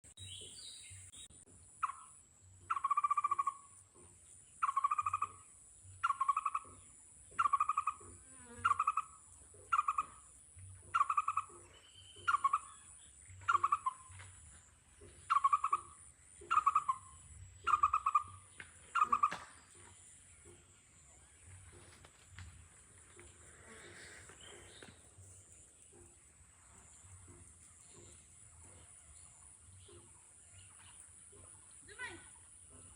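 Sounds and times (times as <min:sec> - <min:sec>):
bird hooting calls: 0:01.8 - 0:03.8, 0:04.6 - 0:05.4, 0:06.0 - 0:10.3, 0:10.9 - 0:14.3, 0:15.2 - 0:19.9.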